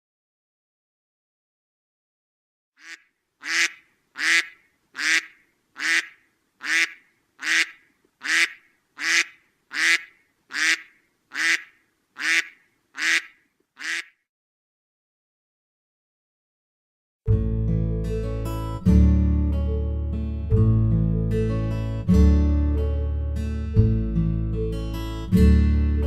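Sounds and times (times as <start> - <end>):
duck quacking: 2.8 - 14.3.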